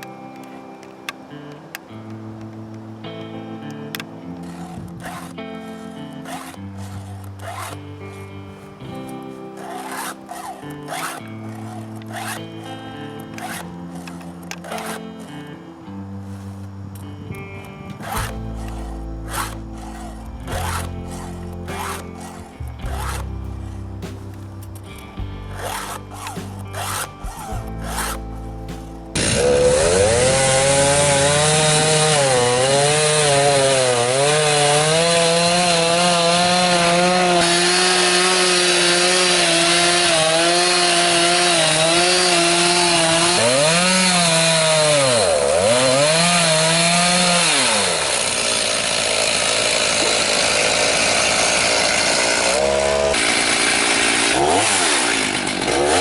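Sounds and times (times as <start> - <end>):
music: 0.0 - 49.0, 49.6 - 56.0
chainsaw cutting wood: 0.0 - 56.0.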